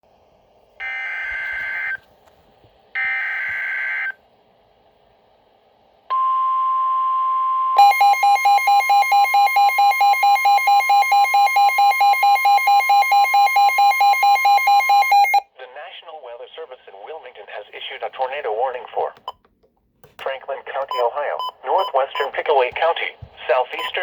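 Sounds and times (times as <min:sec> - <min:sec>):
high warning tone: 0:06.1 - 0:15.4
rapidly pulsing alarm beeping: 0:07.8 - 0:15.4, 0:20.9 - 0:22.4, 0:23.7 - 0:24.0.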